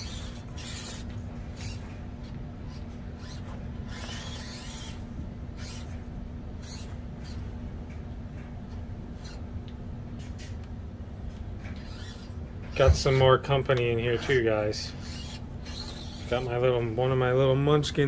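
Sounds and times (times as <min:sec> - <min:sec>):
toy truck motor whirring: 0:00.0 - 0:06.0, 0:06.6 - 0:07.4, 0:09.2 - 0:09.4, 0:11.7 - 0:13.3, 0:15.0 - 0:16.5
steady low hum: 0:00.0 - 0:18.0.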